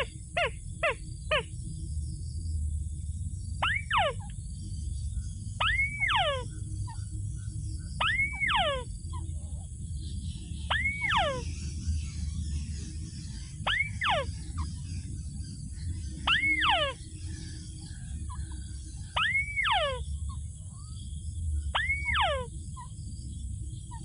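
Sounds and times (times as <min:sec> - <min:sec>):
bird squawking call: 0:00.0 - 0:01.5, 0:03.6 - 0:04.3, 0:05.6 - 0:07.0, 0:08.0 - 0:09.3, 0:10.7 - 0:11.6, 0:13.3 - 0:15.0, 0:16.1 - 0:17.6, 0:18.2 - 0:20.4, 0:21.7 - 0:22.9
low steady rumble: 0:00.0 - 0:24.0.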